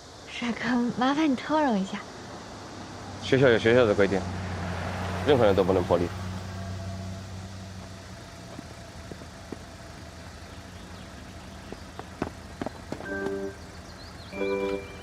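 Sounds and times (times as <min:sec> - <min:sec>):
low ambient hum: 0:05.4 - 0:15.0.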